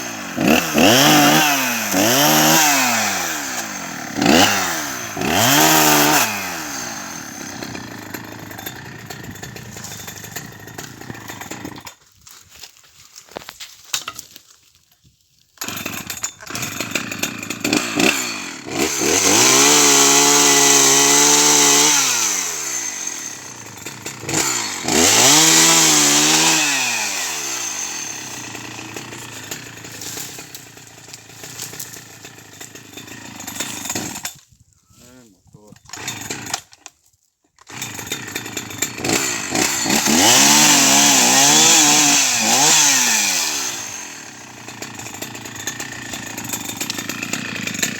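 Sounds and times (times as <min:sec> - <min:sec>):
chainsaw cutting firewood: 0:00.0 - 0:47.9.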